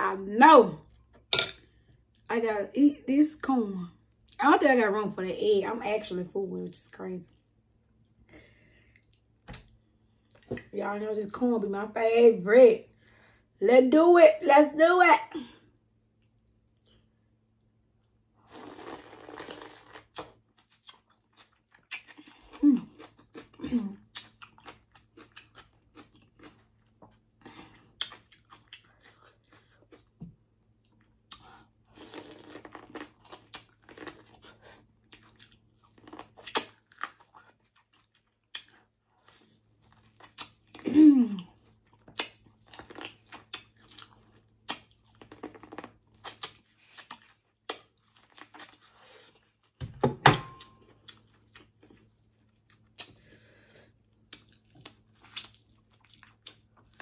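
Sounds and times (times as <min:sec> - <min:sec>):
chewing corn on the cob: 0:18.7 - 0:30.2, 0:30.8 - 0:49.8, 0:54.0 - 0:57.0.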